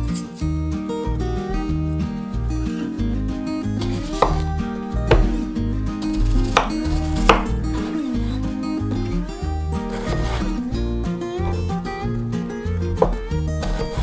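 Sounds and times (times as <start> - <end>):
background music: 0.0 - 14.0
knife chopping on cutting board: 3.8 - 8.1, 9.9 - 10.6, 13.0 - 14.0.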